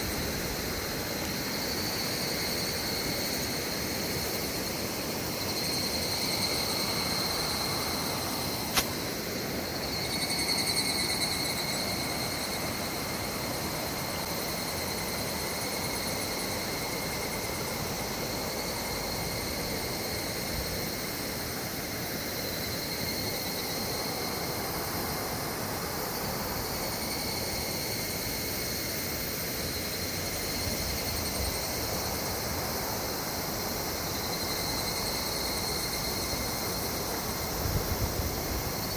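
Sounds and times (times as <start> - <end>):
high-pitched insect chorus: 0.0 - 38.9
sharp click: 8.7 - 9.0.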